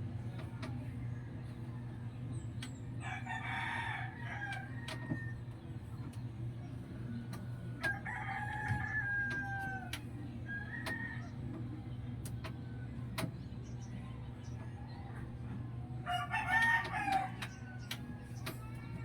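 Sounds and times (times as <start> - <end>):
steady low hum: 0.0 - 19.0
rooster crowing: 3.0 - 5.3, 7.8 - 9.9, 16.0 - 17.9.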